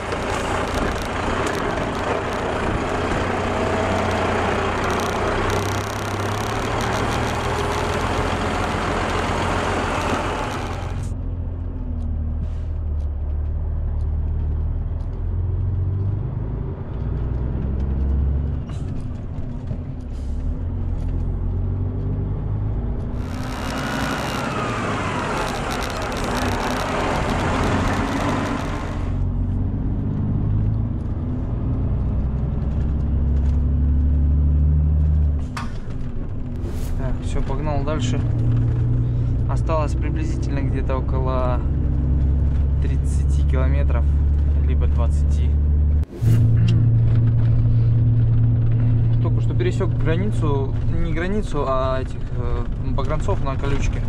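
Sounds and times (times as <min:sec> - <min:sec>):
vehicle engine running: 0:00.0 - 0:54.0.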